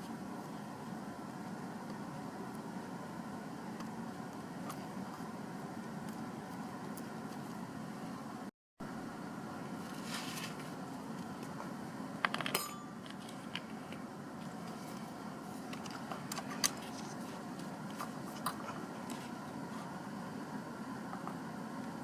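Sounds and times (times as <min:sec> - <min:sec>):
steady low hum: 0:00.0 - 0:22.0
small metal tools clinking: 0:12.3 - 0:13.2.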